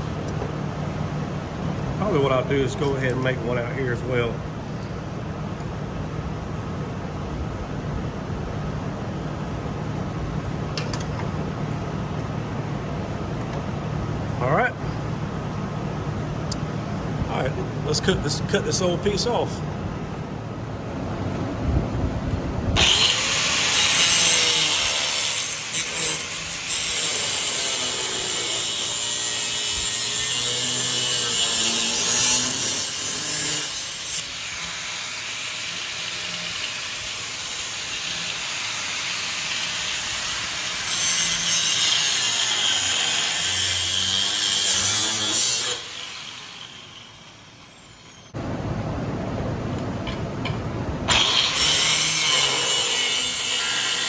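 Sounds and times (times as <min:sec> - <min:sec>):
angle grinder cutting metal: 0:22.8 - 0:48.4, 0:51.1 - 0:54.0.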